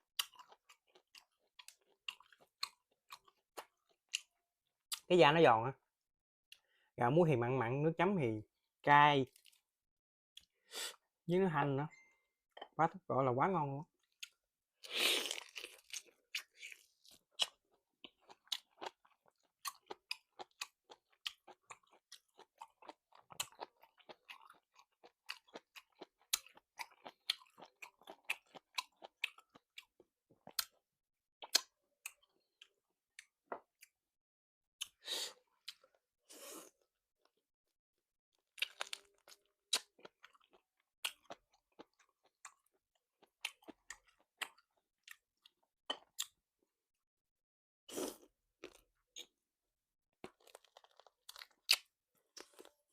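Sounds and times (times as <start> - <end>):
crisp chewing and crunching: 14.0 - 30.8, 38.4 - 46.4, 50.2 - 52.9.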